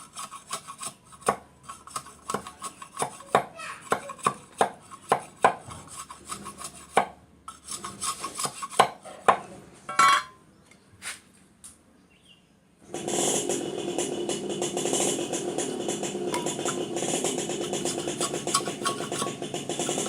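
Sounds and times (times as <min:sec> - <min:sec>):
blade cutting bamboo: 0:00.0 - 0:09.0, 0:13.0 - 0:20.0
scraping and knocks: 0:00.0 - 0:10.4, 0:15.1 - 0:20.0.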